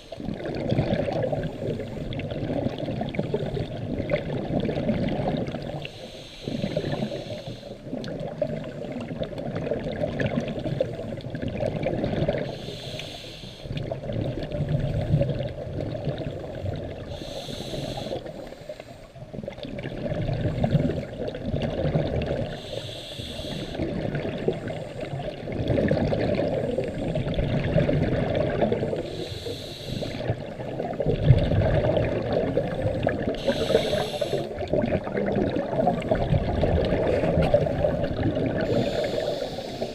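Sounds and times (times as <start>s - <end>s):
water bubbling: 0.0s - 13.0s, 13.6s - 39.9s
diver breathing through regulator: 5.7s - 7.9s, 12.4s - 13.8s, 17.0s - 19.2s, 22.4s - 25.3s, 28.8s - 30.5s, 32.6s - 34.8s, 38.4s - 39.9s.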